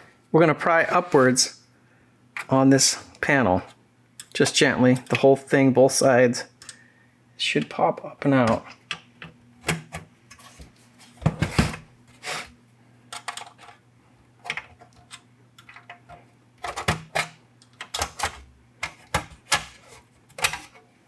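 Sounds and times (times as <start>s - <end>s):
plastic panel clicking and snapping: 8.5s - 10.1s, 14.5s - 20.8s.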